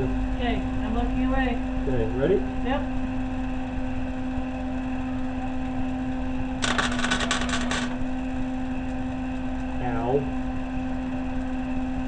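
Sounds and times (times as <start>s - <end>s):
steady electrical hum: 0.0s - 12.0s
welding arc crackling: 6.6s - 8.2s.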